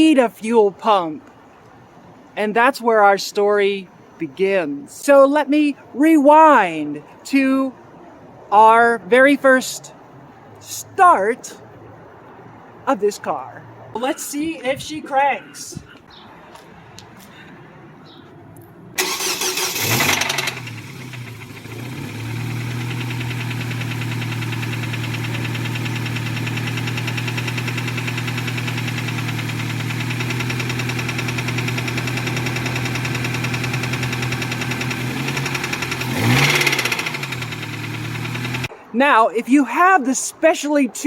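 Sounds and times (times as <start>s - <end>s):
car engine idling: 19.0s - 38.7s
engine revving: 19.0s - 38.7s
starter cranking engine: 19.0s - 38.7s
engine knocking: 19.2s - 38.7s.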